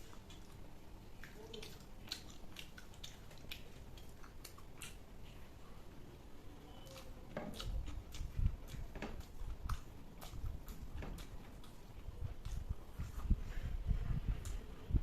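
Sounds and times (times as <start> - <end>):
person chewing: 0.0 - 5.8, 6.7 - 13.4
wet mouth clicks: 1.2 - 5.1, 6.8 - 13.4.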